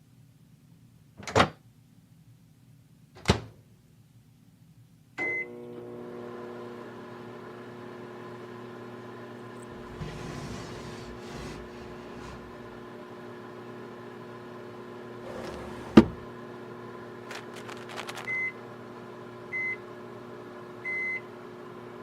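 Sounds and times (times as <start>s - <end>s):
microwave beep: 5.2s - 5.6s, 18.3s - 18.6s, 19.5s - 19.8s, 20.8s - 21.3s
microwave oven humming: 5.2s - 22.0s.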